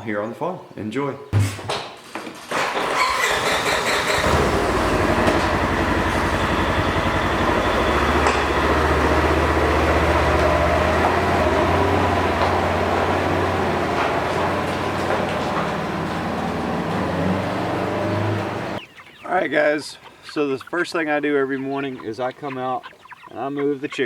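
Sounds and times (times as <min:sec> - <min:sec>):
vehicle engine running: 0:03.6 - 0:18.8.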